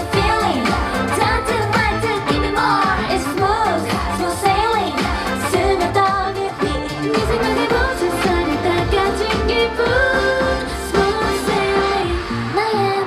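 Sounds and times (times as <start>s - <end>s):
pop song with woman singing: 0.0s - 13.0s.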